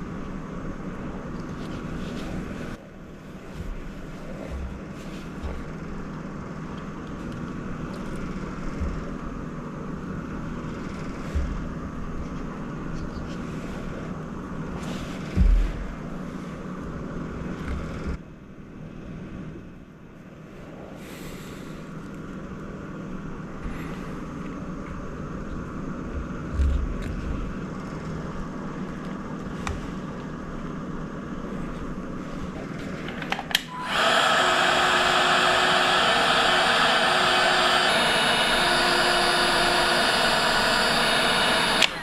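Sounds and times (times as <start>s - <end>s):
electric blower whooshing: 33.7s - 42.0s.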